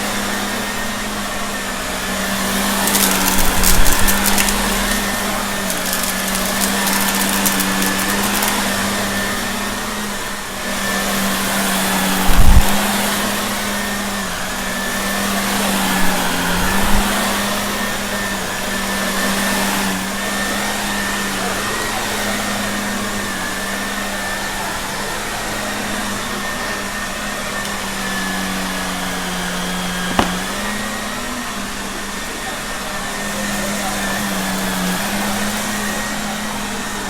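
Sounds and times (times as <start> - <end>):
vacuum cleaner motor hum: 0.4 - 37.0
debris crackling in vacuum: 2.7 - 8.8.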